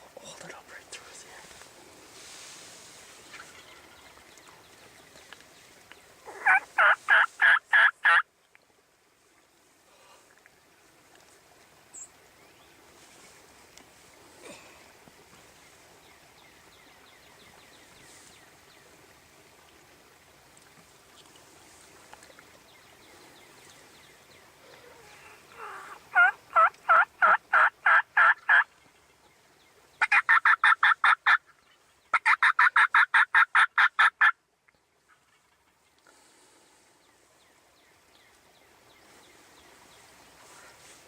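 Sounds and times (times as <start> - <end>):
faint outdoor background: 0.0 - 41.0
turkey yelping: 6.3 - 8.2, 25.6 - 28.6, 30.0 - 31.4, 32.1 - 34.3.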